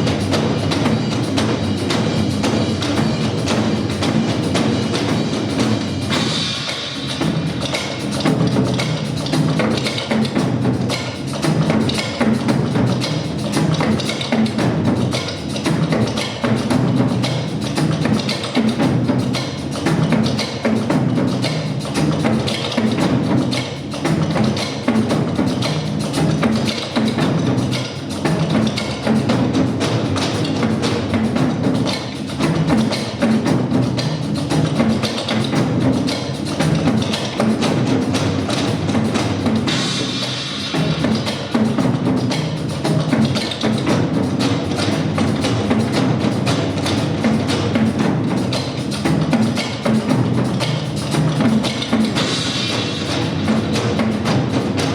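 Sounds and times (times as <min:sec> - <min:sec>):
drumming ensemble fast rhythm: 0:00.0 - 0:54.9.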